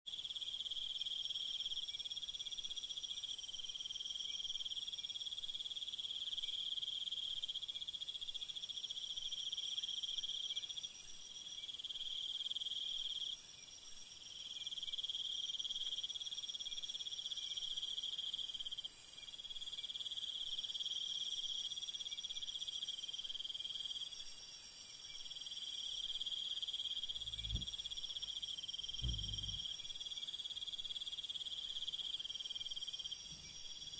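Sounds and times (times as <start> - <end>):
crickets and insects trilling: 23.8 - 33.9
low thump: 27.2 - 27.9, 28.9 - 29.7.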